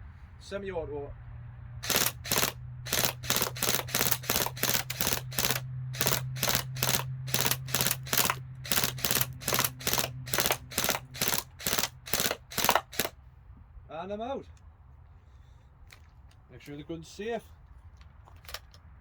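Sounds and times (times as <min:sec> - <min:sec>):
airsoft gun shots: 0:01.8 - 0:13.2.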